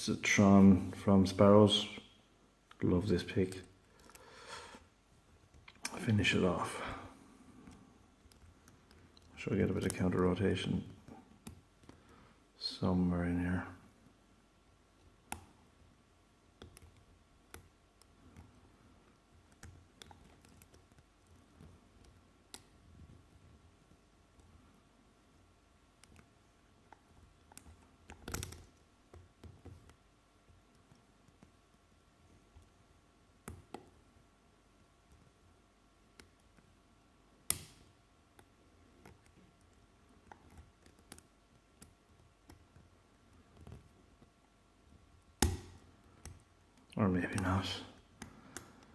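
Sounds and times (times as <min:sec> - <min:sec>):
lock pick clicks and ticks: 0:26.9 - 0:29.2, 0:37.5 - 0:37.8
lock pick clicking in padlock: 0:37.5 - 0:37.8.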